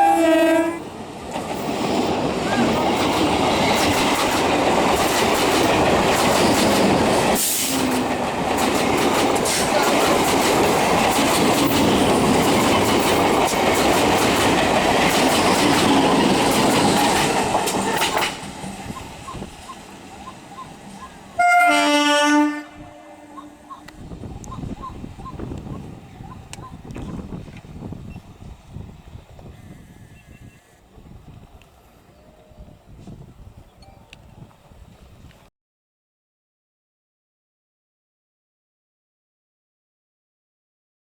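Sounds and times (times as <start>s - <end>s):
train horn blast: 0.0s - 0.9s, 21.4s - 23.9s
train wheels clattering over rail joints: 1.2s - 21.2s.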